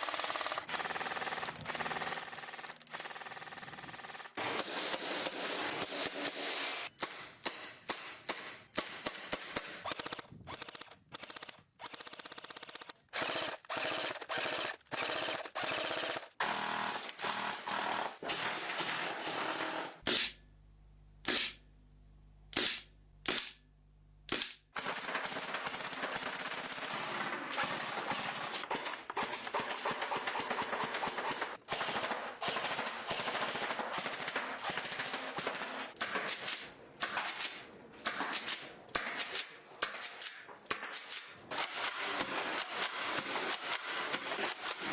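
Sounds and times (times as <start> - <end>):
airsoft guns firing in bursts: 0.0 - 20.4, 24.3 - 44.9
single airsoft shots: 20.0 - 20.4, 21.2 - 21.6, 22.5 - 23.6.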